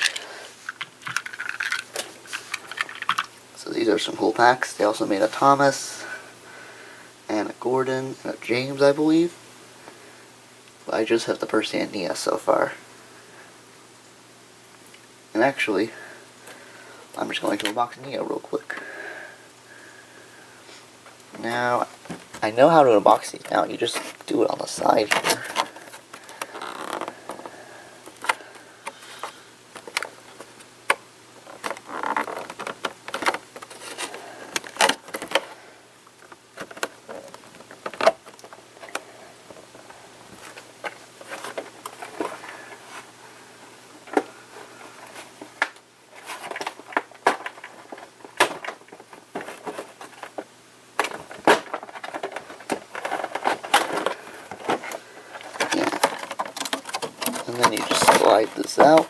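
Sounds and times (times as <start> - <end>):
packaging crinkling and clicking: 0.0 - 3.4, 28.1 - 35.5, 45.5 - 59.0.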